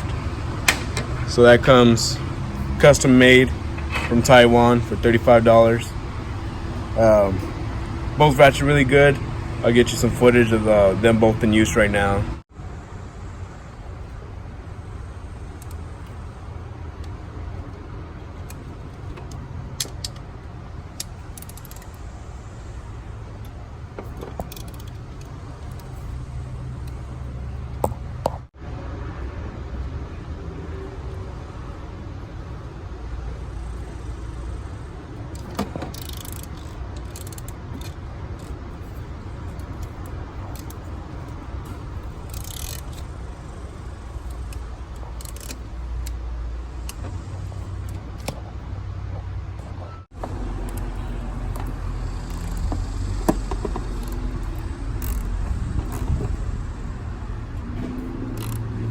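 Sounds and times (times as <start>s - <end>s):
steady low rumble: 0.0s - 30.4s, 36.4s - 58.9s
metal clicks of ratchets and sockets: 15.5s - 16.2s, 18.4s - 20.3s, 20.9s - 22.1s, 23.4s - 26.2s, 35.2s - 47.2s, 50.3s - 56.4s, 57.9s - 58.8s
ratcheting bursts: 20.9s - 22.3s, 35.2s - 48.3s, 50.6s - 56.9s, 58.0s - 58.9s.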